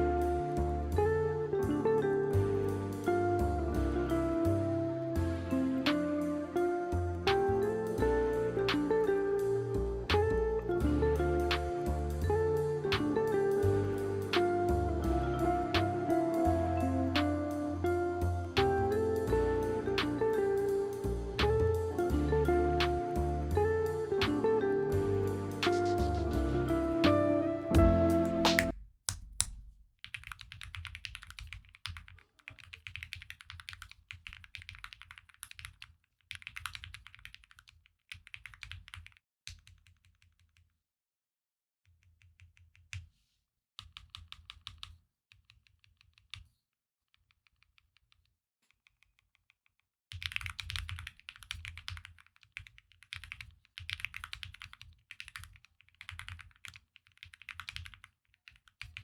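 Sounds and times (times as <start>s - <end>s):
mechanical keyboard typing: 28.3s - 40.7s, 43.8s - 46.4s, 50.1s - 59.0s.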